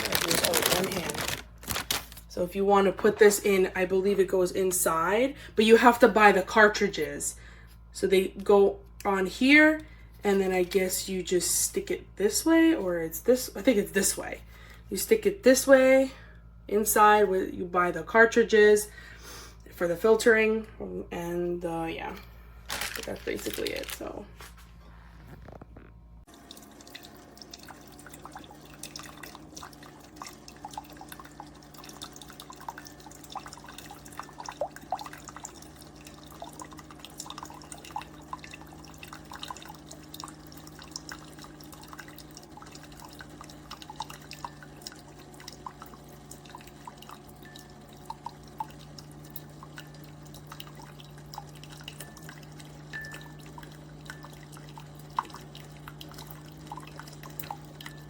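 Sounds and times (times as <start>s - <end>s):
coffee maker humming: 0.0s - 58.0s
coffee dripping into cup: 26.3s - 58.0s.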